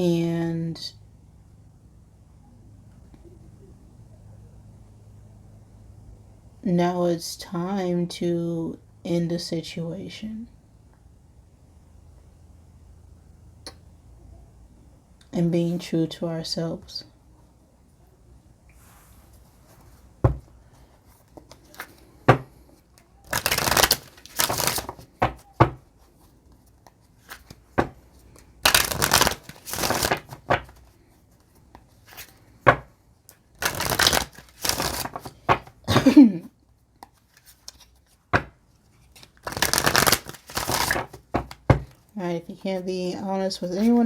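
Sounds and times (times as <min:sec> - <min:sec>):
cards being shuffled: 0:21.1 - 0:36.1, 0:37.0 - 0:42.1, 0:43.7 - 0:44.0
cards tapping and clicking: 0:21.3 - 0:25.8, 0:26.6 - 0:30.8, 0:32.6 - 0:36.1, 0:37.0 - 0:42.0.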